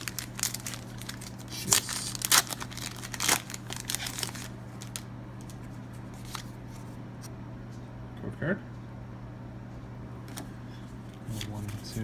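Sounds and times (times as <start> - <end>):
foil wrapper tearing and crinkling: 0.0 - 5.6.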